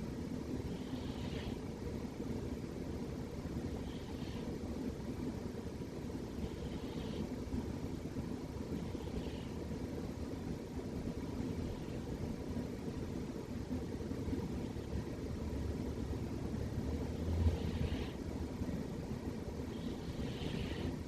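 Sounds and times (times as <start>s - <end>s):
cat snoring: 0.7s - 1.6s, 3.7s - 4.6s, 6.3s - 7.4s, 8.8s - 9.6s, 17.0s - 18.2s, 19.7s - 21.0s.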